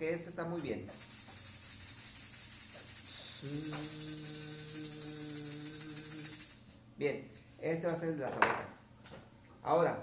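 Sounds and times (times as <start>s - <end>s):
steady low hum: 0.0s - 8.2s
tambourine shaking: 0.8s - 8.4s.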